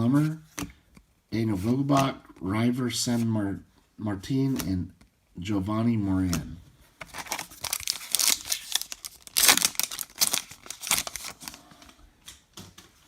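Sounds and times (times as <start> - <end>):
wrapper crinkling and tearing: 7.0 - 11.8.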